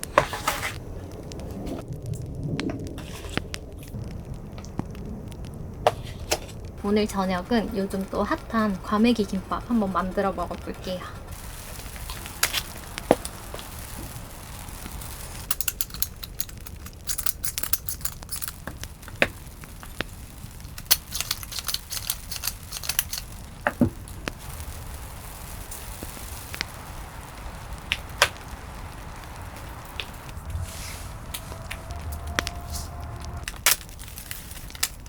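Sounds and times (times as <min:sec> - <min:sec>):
packaging crinkling: 0:11.3 - 0:35.0.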